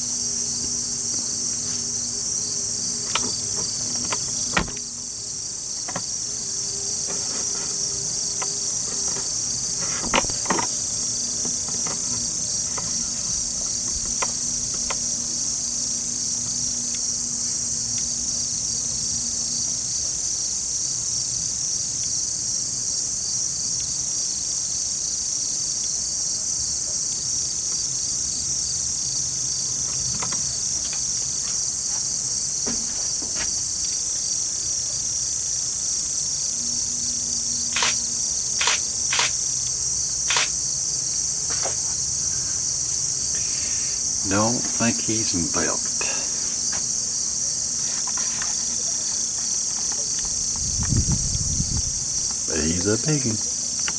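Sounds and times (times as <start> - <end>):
insects trilling: 0.0 - 53.9
sharp knocks: 3.1 - 4.9.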